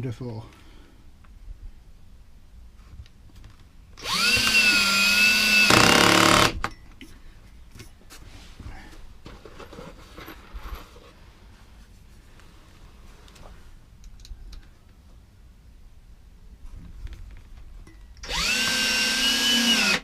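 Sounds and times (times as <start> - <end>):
cordless drill whine: 4.0 - 6.7, 18.2 - 20.0
faint clicks and handling: 12.3 - 15.1.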